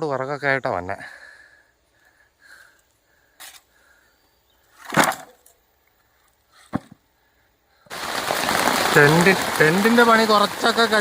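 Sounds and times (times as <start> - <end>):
crickets chirping: 0.0 - 11.0
sticks rustling: 4.7 - 5.6
crash of sticks: 4.8 - 5.4.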